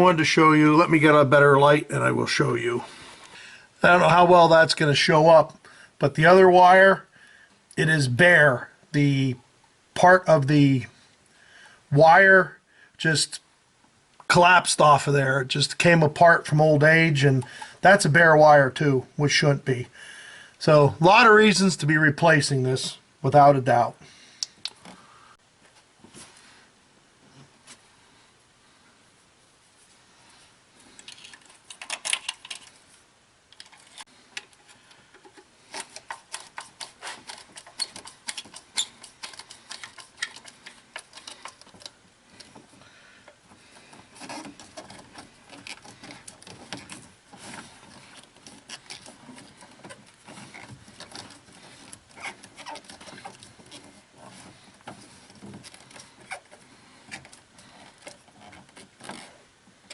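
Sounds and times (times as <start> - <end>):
tools clicking and rattling: 31.0 - 32.8, 33.6 - 42.7.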